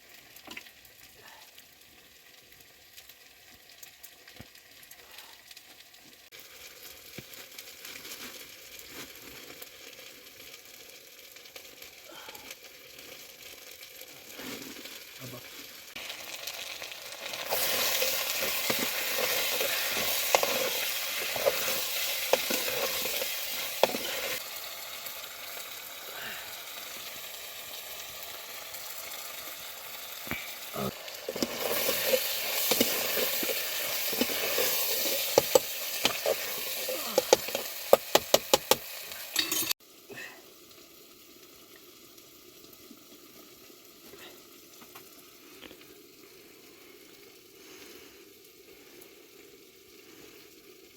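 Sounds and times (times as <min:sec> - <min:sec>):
food sizzling in a pan: 0:00.0 - 0:50.9.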